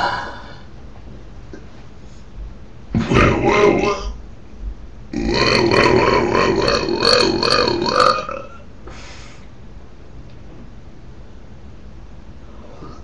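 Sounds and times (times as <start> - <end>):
long wavering belch: 3.0 - 4.2, 5.1 - 8.6.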